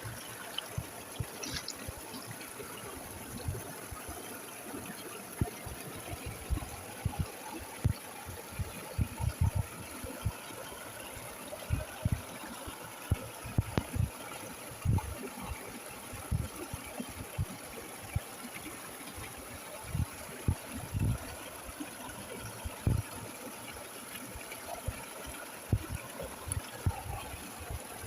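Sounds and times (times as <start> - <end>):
stream rushing: 0.0 - 9.0
water thumps and gurgles: 0.0 - 28.0.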